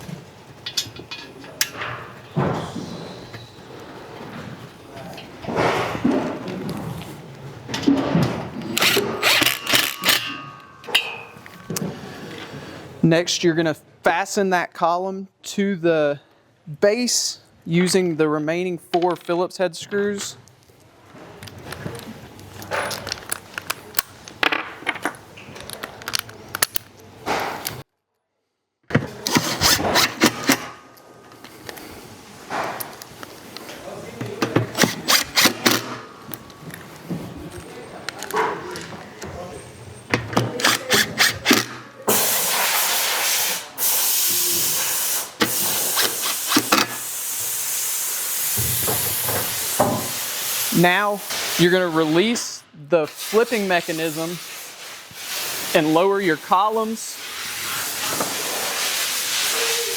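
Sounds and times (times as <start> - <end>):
parts being handled: 0.0 - 12.6, 21.1 - 27.8, 28.9 - 47.3
metal screws clinking: 8.8 - 11.4
sharp clicks of parts handled: 22.4 - 27.0.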